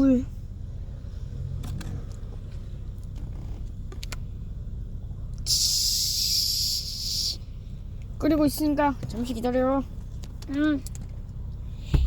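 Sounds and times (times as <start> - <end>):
sharp steady hiss: 5.4 - 7.5
low rumble: 11.2 - 12.0.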